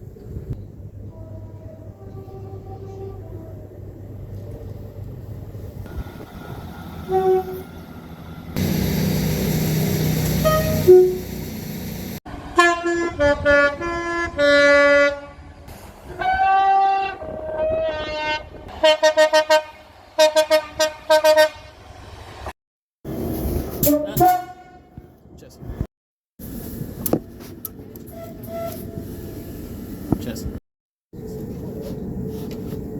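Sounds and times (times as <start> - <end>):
rushing train running noise: 0.8 - 13.7
train horn toots: 7.0 - 7.8, 10.2 - 11.3, 12.5 - 21.8, 24.1 - 25.0.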